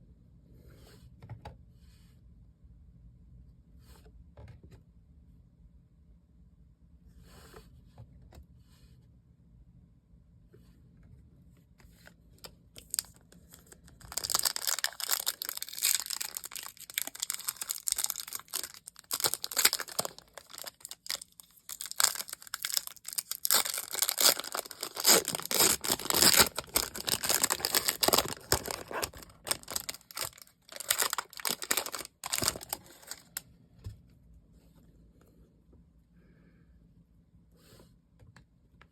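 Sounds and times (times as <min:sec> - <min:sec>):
packaging torn and crinkled: 0:12.8 - 0:33.4.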